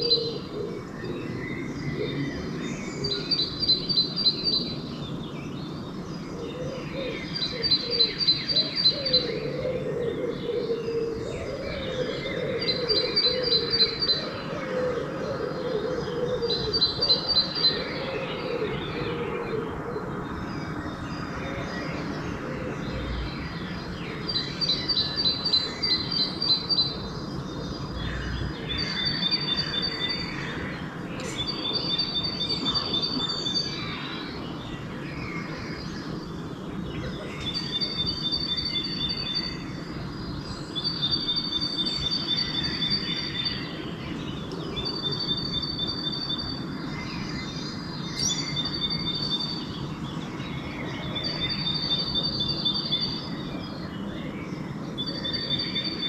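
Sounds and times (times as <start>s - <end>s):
birds chirping: 0.0s - 56.0s.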